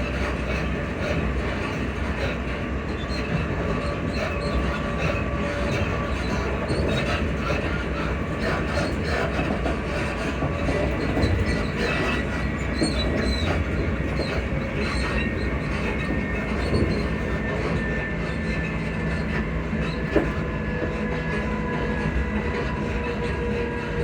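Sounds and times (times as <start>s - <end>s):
train wheels rumbling on rail: 0.0s - 24.0s.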